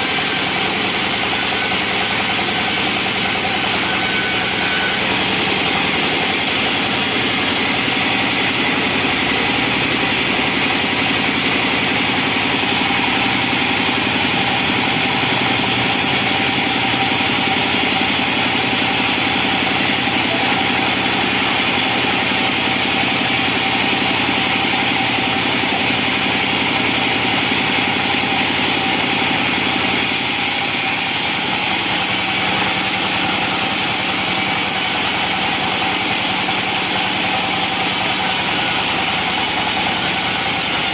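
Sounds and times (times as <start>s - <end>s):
sawmill engine droning: 0.0s - 40.9s.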